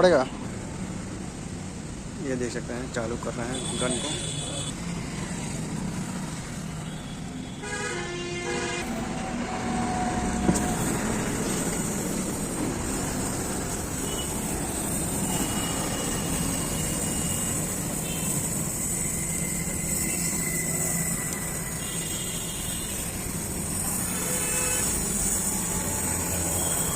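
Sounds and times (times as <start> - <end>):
welding arc crackling and hissing: 10.6 - 26.9.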